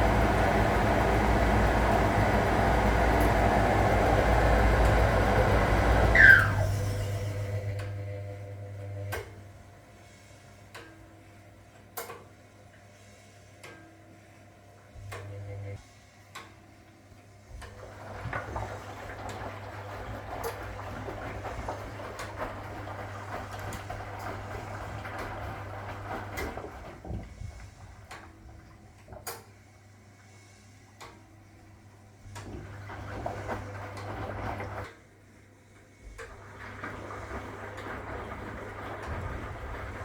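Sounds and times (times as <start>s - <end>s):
washing machine swishing: 0.0s - 9.5s, 17.5s - 29.6s, 32.2s - 35.1s, 35.9s - 40.0s
washing machine motor hum: 0.0s - 12.6s, 14.6s - 40.0s.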